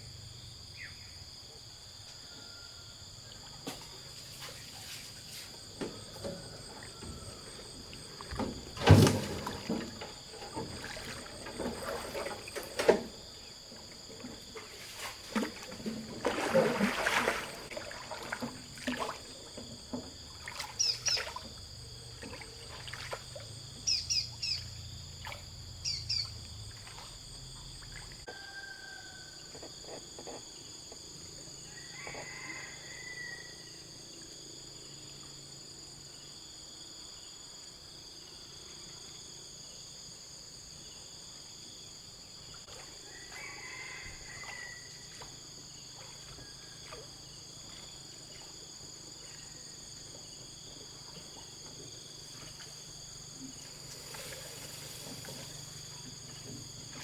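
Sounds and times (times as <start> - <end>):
insects droning: 0.0 - 57.0
bird calls: 20.6 - 21.5, 23.8 - 24.8, 25.8 - 27.0
short knocks and chirps: 20.6 - 21.5.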